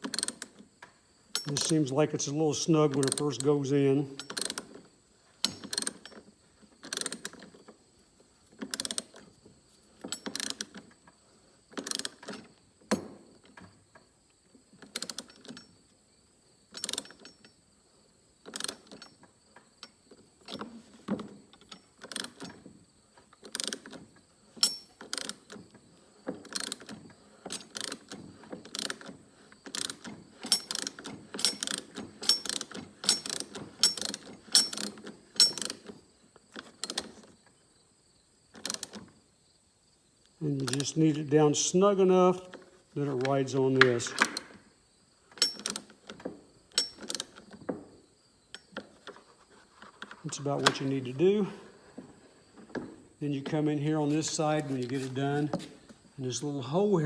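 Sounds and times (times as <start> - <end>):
ratchet clicking: 6.8 - 7.5, 24.6 - 25.4, 29.7 - 35.9, 45.4 - 45.9, 46.8 - 47.4.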